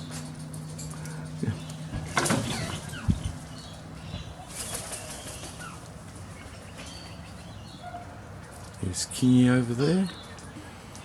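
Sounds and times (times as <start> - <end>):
bird wings flapping: 4.5 - 5.6.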